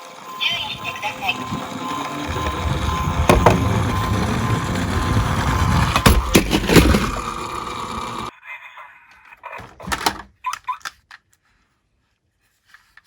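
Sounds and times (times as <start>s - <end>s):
toy cars rolling rumble: 0.0s - 8.3s
toy cars clacking together: 0.3s - 8.3s.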